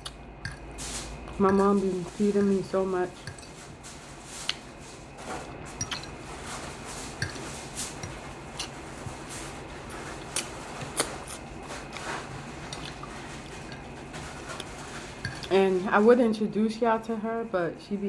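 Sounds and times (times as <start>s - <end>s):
person chewing food: 0.0s - 1.6s, 4.4s - 15.5s
steady low hum: 0.0s - 18.0s.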